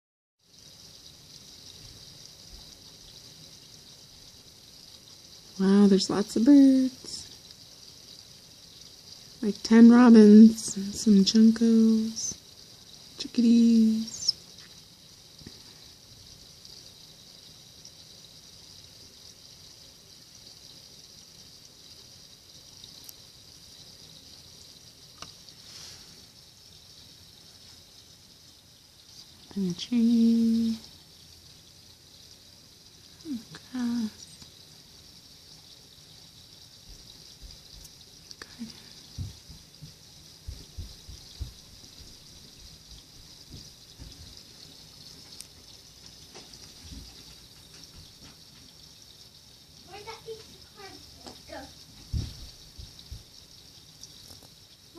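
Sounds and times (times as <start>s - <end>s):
light rain hiss: 0.4s - 54.9s
soft low thuds: 39.1s - 44.4s, 52.0s - 53.4s.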